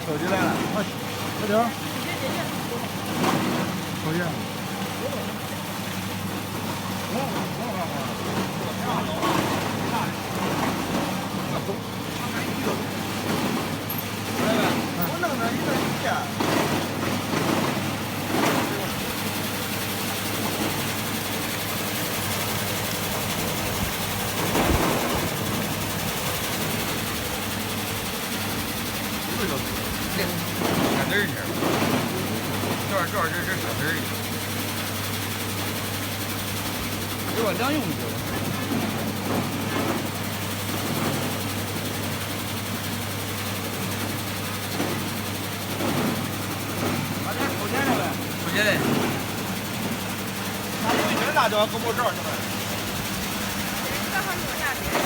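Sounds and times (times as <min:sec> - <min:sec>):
machine motor humming and whirring: 0:00.0 - 0:55.0
cutting machine motor hum: 0:37.1 - 0:40.2.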